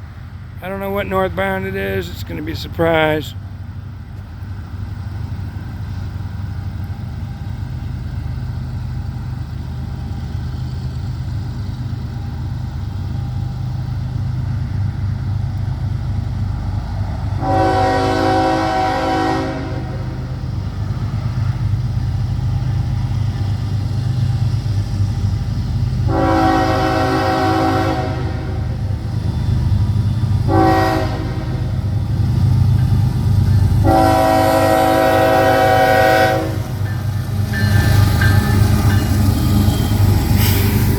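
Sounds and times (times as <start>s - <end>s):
train rumbling: 0.0s - 40.9s
locomotive air horn blasts: 17.4s - 20.2s, 26.1s - 28.8s, 30.5s - 31.8s, 33.8s - 36.8s.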